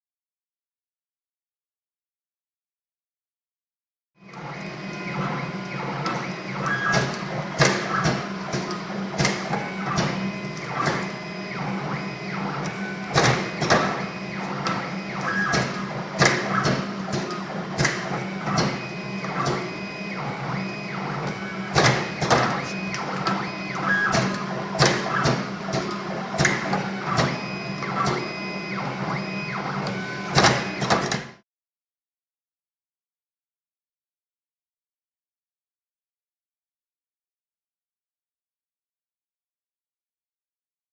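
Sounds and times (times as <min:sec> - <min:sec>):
machine motor hum: 0:04.2 - 0:31.4
sharp mechanical clicks and clacks: 0:04.3 - 0:31.4.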